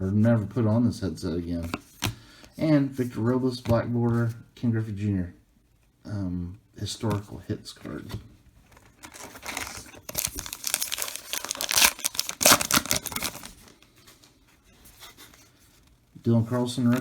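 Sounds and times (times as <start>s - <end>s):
wrapper being torn and crinkled: 9.0s - 13.7s.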